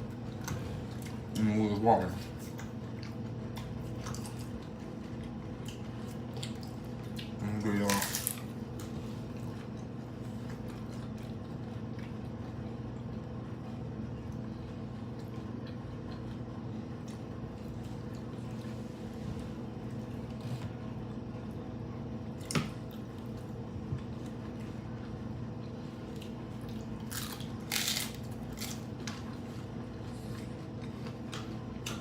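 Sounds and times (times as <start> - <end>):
steady hum: 0.0 - 32.0
people chewing: 0.3 - 20.8, 22.4 - 32.0
taco shell crunch: 6.4 - 8.5, 26.2 - 29.2.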